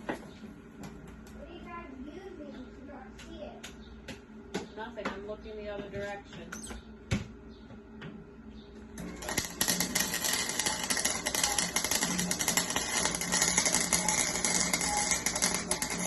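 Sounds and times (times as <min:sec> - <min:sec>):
welding arc crackling: 0:09.0 - 0:16.0.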